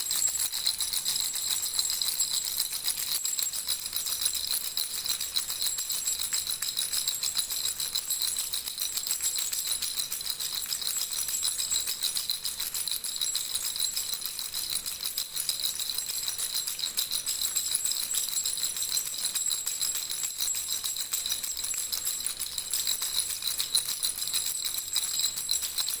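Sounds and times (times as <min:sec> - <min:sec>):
baby rattle jingling: 0:00.0 - 0:02.5.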